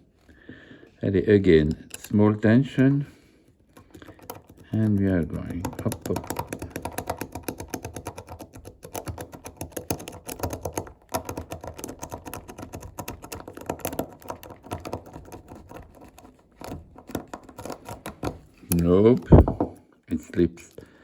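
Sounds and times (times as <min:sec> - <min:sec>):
lock pick clicking in padlock: 0:03.7 - 0:19.5.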